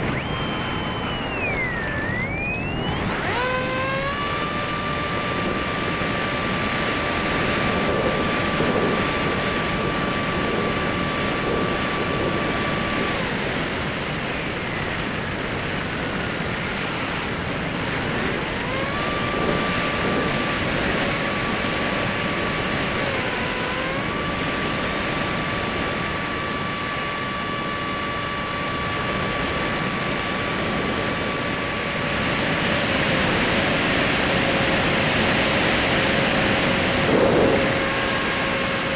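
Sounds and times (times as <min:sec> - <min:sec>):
electric motor and propeller whine: 0:00.0 - 0:38.9
wind rush: 0:00.0 - 0:38.9.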